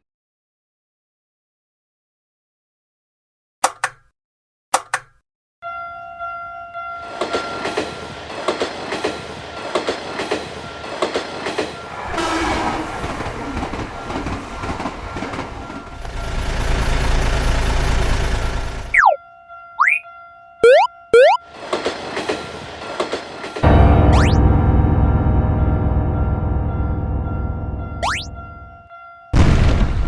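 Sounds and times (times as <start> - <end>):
crossing bell ringing tone: 5.6 - 8.4, 18.9 - 21.5, 22.3 - 29.4
train rumbling past: 6.2 - 19.0, 21.4 - 29.0
train wheels clacking over rail joints: 7.0 - 18.8, 21.5 - 23.6.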